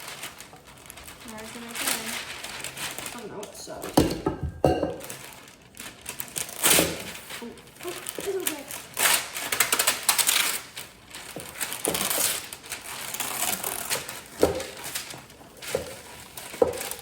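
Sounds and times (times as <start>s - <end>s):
baking gear clinking: 3.9s - 5.3s.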